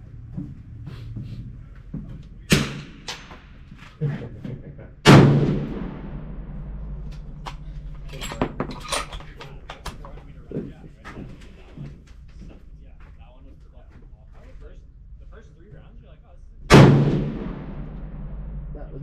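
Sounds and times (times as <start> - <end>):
rifle shots with echo: 2.5 - 3.7, 5.0 - 9.8, 16.7 - 18.9.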